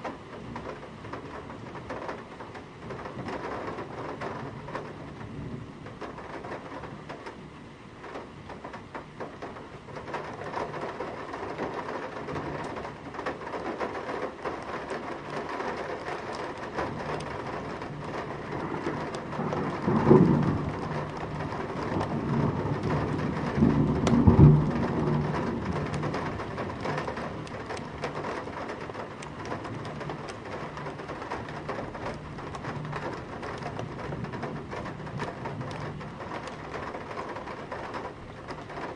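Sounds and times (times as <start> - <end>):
heavy rain on metal sill: 0.0 - 38.9
thunder rumbling: 10.0 - 38.9.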